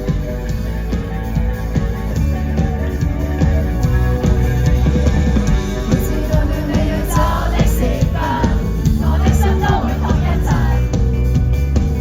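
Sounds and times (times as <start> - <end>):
live band playing indie pop: 0.0 - 12.0
steady drum beat: 0.0 - 12.0.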